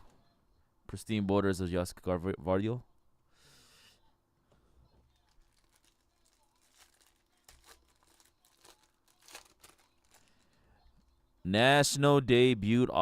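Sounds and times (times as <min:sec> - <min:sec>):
cards and wrappers rustling: 0:04.9 - 0:10.7.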